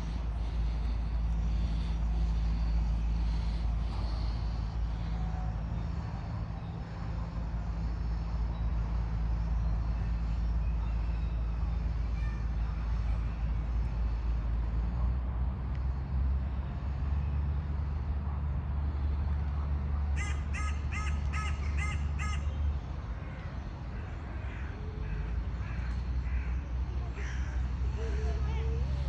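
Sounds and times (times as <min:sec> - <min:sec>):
steady low rumble: 0:00.0 - 0:20.6
crow cawing: 0:20.2 - 0:22.5, 0:24.4 - 0:26.6.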